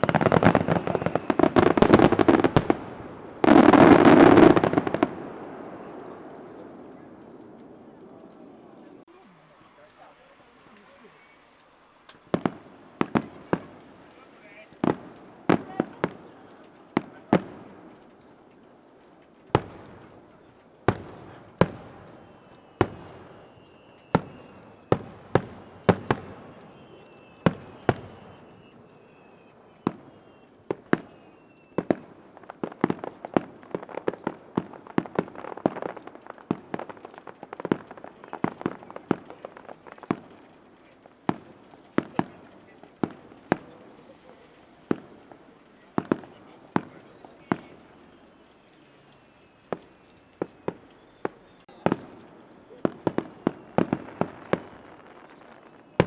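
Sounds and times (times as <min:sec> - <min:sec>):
fireworks bursting: 0:00.0 - 0:56.0
rapid crackling pops: 0:00.0 - 0:56.0
faint high whistle: 0:09.6 - 0:12.1, 0:22.0 - 0:31.9, 0:46.4 - 0:53.9.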